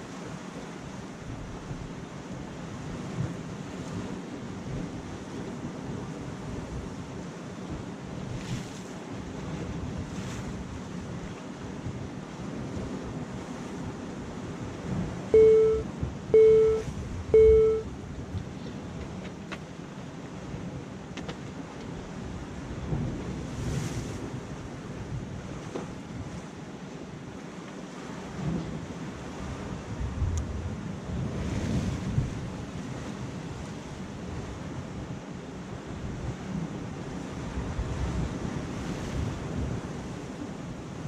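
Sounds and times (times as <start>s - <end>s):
short beeps: 15.4s - 17.9s.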